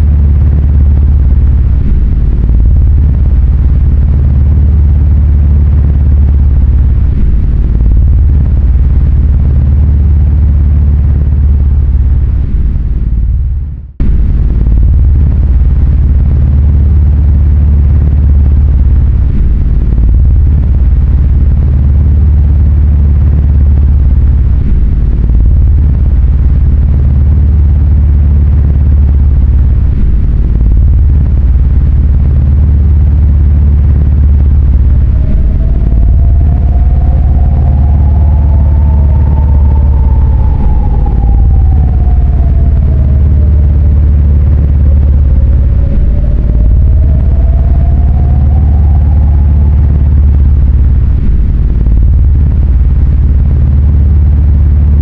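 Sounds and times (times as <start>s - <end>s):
loud low rumble: 0.0s - 55.0s
faint rising pitched tone: 33.1s - 52.8s.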